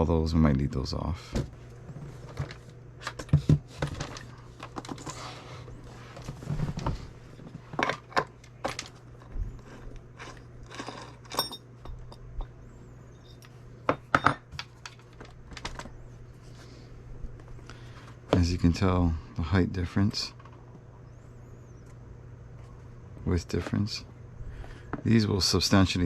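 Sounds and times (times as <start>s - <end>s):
steady low hum: 0.0s - 26.0s
clicks taps and rattles of handling: 6.2s - 9.4s, 14.1s - 16.0s.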